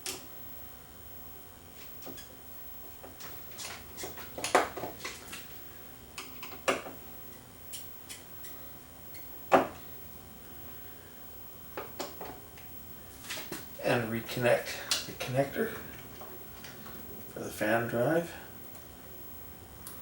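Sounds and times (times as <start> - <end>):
fan clicking and knocking: 2.8 - 5.5, 6.2 - 7.0, 11.8 - 12.7.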